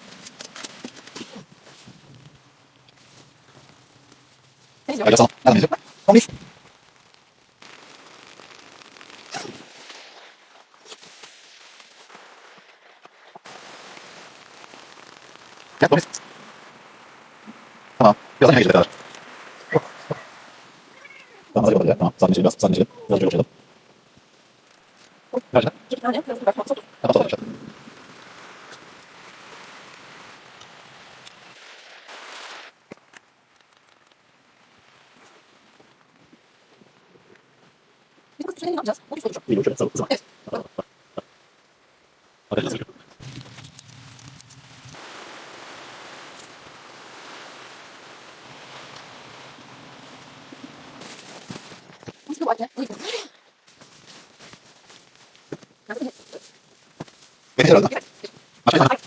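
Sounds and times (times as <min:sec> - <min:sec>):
heavy rain on tent fabric: 0:00.0 - 0:59.0
faint clicks: 0:32.9 - 0:34.4.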